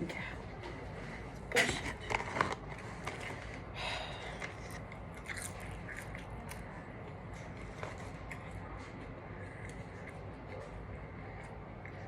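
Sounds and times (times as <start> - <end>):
person chewing: 4.2 - 12.0.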